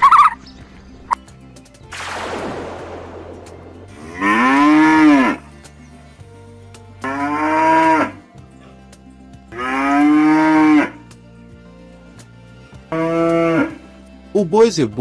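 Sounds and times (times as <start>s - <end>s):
faint background music: 0.0s - 15.0s
cattle mooing: 3.9s - 5.5s, 7.0s - 8.2s, 9.5s - 11.0s, 12.9s - 13.9s.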